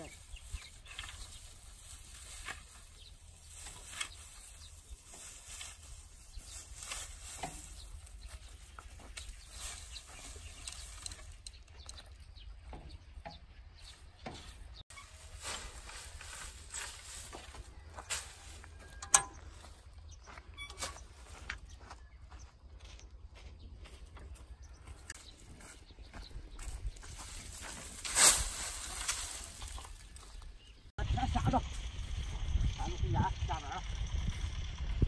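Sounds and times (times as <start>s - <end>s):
dry rustles and crackles: 0.0s - 21.8s, 24.7s - 32.0s
low rumble: 31.0s - 35.0s.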